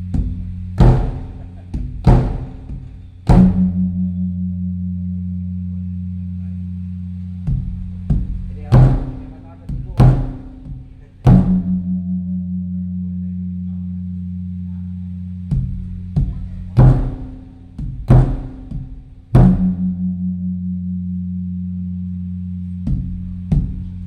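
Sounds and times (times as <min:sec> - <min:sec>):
large temple drum booming: 0:00.2 - 0:04.2, 0:07.5 - 0:12.3, 0:15.5 - 0:20.3.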